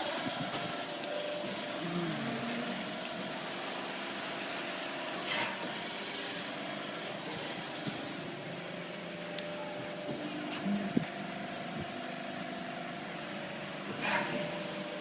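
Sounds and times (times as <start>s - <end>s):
hydraulic pump motor humming: 0.0s - 15.0s.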